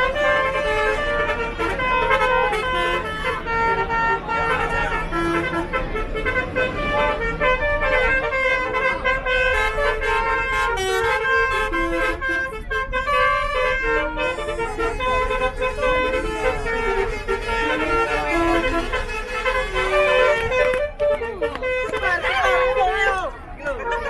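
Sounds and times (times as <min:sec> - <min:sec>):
bus horn playing melody: 0:00.0 - 0:24.0.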